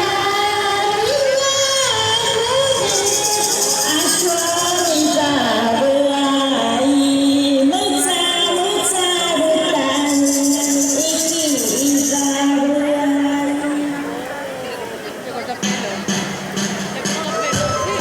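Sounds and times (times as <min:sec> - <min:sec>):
loud dance music: 0:15.6 - 0:18.0.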